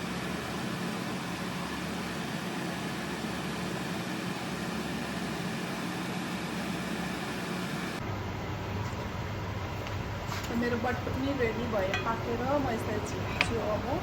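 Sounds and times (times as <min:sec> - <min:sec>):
low steady hum: 0:06.8 - 0:14.0.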